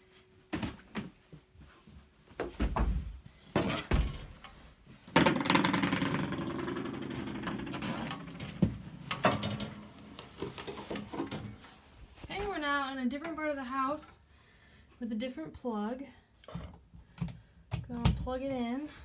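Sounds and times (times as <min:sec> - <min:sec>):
handling knocks and thumps: 0:02.3 - 0:12.6.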